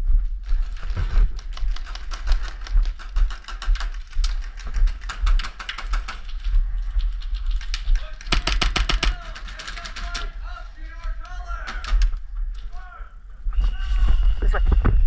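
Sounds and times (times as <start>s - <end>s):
rapid clicking and rattling: 0.6s - 10.4s.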